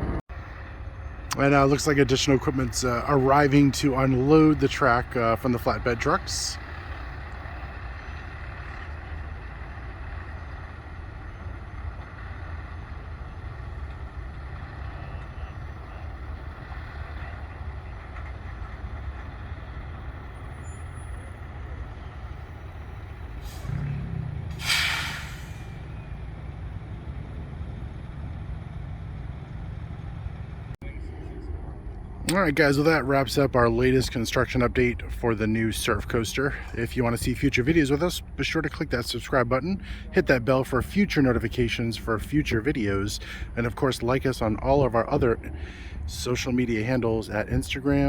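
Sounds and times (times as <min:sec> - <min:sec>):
diesel truck engine rumbling: 0:00.0 - 0:48.0
air brakes hissing: 0:23.3 - 0:26.2.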